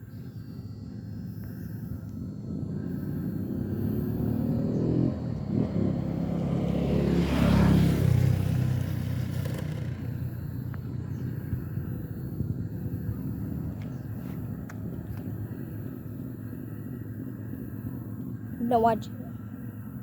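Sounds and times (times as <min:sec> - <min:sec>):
vehicle engine passing by: 0:02.5 - 0:15.6.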